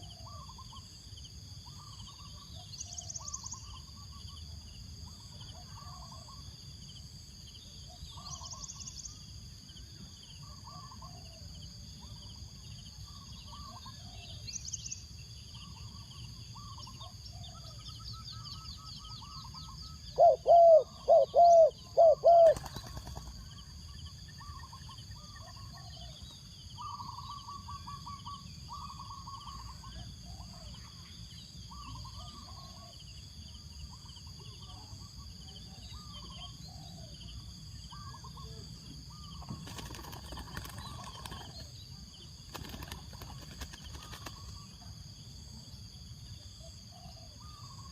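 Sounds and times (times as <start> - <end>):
high insect drone: 0.0 - 47.9
other birds calling: 15.7 - 23.5
dove cooing: 20.1 - 23.2.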